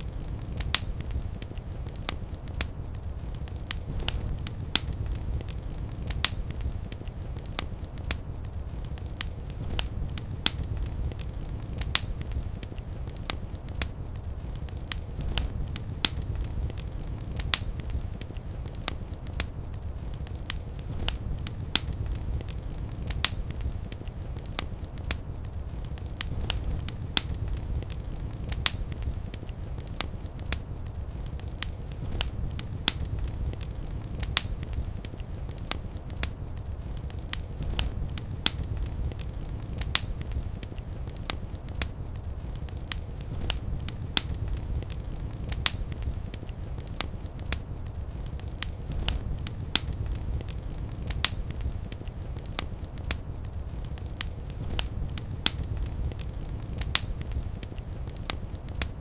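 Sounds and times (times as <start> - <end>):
fire crackling and popping: 0.0 - 59.0
low rumble of flames: 0.0 - 59.0.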